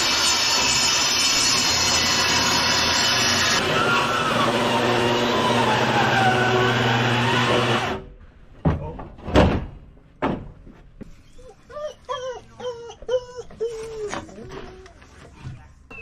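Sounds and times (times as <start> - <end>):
table saw ripping wood: 0.0 - 8.1
knocks: 8.6 - 10.8.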